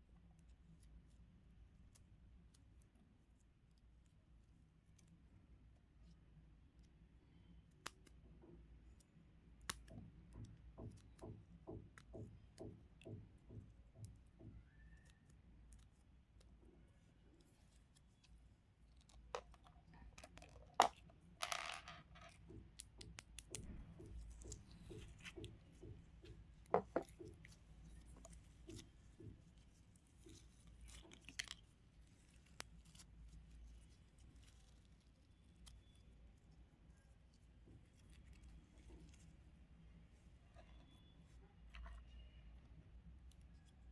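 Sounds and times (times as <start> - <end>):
soft even taps: 21.5 - 31.5.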